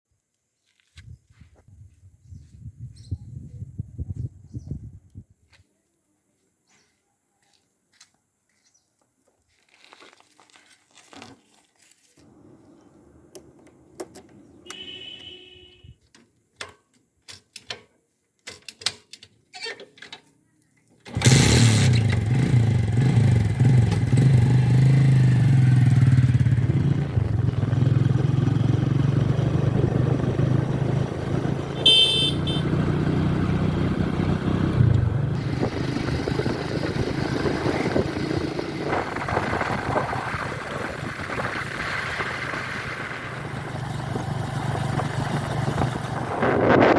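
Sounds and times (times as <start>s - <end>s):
vehicle engine running: 21.2s - 46.4s.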